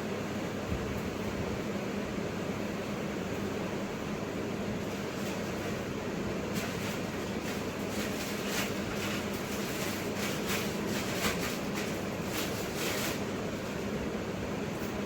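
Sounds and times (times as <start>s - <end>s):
mechanical hum of equipment: 0.0s - 15.0s
soft brushing or rustling: 6.5s - 13.9s.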